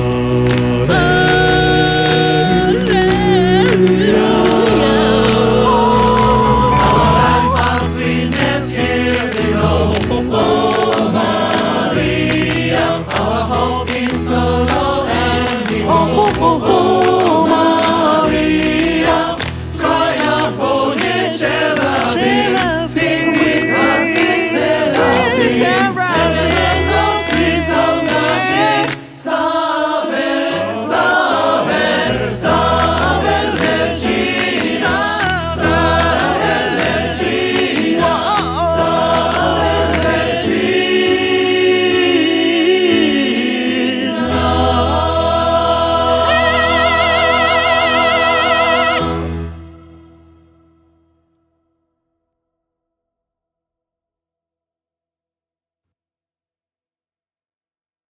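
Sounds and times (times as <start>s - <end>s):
tambourine shaking: 0.0s - 29.5s, 32.4s - 40.5s, 44.3s - 49.6s
choir singing a gospel hymn: 0.0s - 49.4s
piano: 0.0s - 52.0s.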